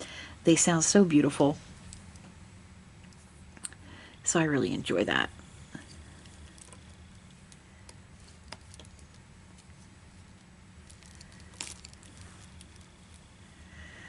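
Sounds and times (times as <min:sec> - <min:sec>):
low steady hum: 0:00.0 - 0:14.0
yarn rustling: 0:05.8 - 0:14.0.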